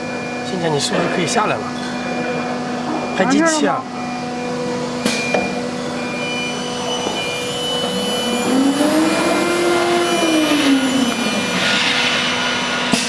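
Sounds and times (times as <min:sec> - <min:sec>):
cnc router machine hum: 0:00.0 - 0:13.0
motor tone rising and falling: 0:06.0 - 0:13.0.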